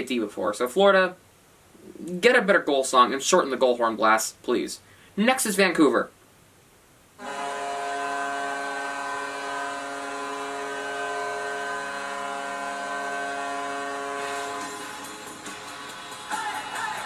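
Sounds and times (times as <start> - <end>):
goal horn blast: 7.2 - 15.9.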